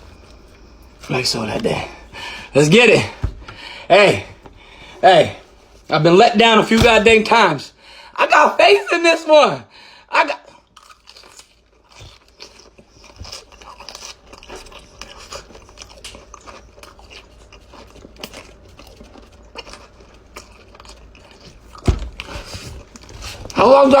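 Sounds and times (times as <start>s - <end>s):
person chewing crunchy snacks: 10.6s - 23.1s.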